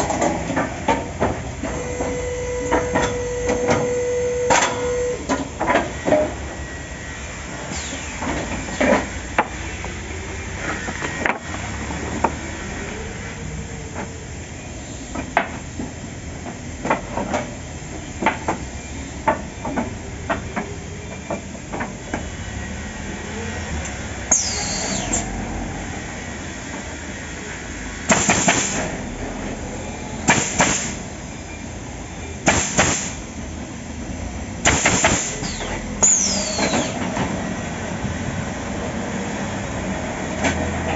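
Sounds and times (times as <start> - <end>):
machine hum and hiss: 0.0 - 40.9
high falling air squeal: 6.4 - 8.8, 24.2 - 26.6, 35.2 - 37.7
nailing machine shots: 28.1 - 29.0, 30.3 - 31.0, 32.4 - 33.2, 34.6 - 37.0.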